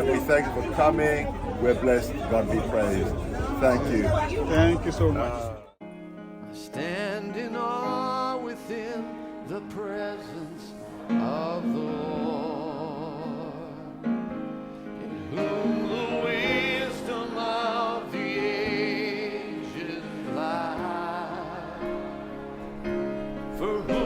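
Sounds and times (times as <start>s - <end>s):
sustained backing chords: 0.0s - 6.3s
person singing with vibrato: 6.6s - 14.2s.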